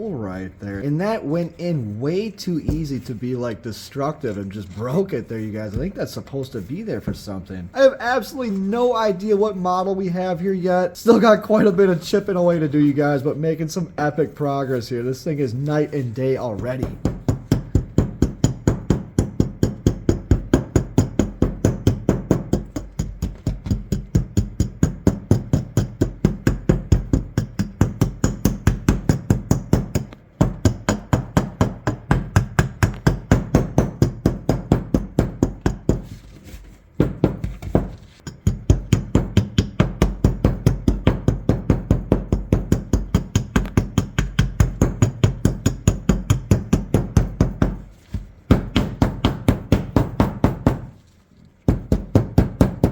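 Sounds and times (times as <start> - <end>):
rapid hammer taps on metal: 16.6 - 36.1, 37.0 - 51.0.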